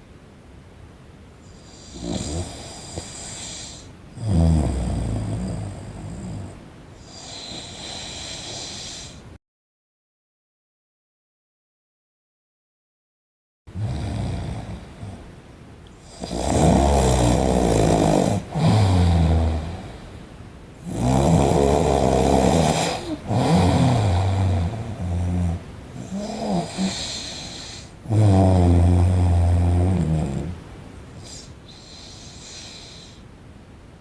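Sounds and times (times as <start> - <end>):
man snoring: 1.6 - 9.2, 13.8 - 15.2, 16.0 - 20.0, 20.8 - 30.6.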